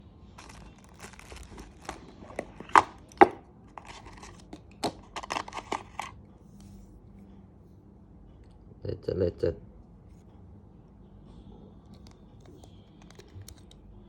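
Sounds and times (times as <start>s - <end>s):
packaging tearing and crinkling: 0.4s - 4.4s.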